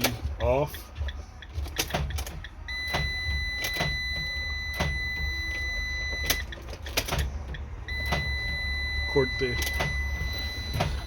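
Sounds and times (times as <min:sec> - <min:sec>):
high-pitched warning tone: 0:07.9 - 0:11.0.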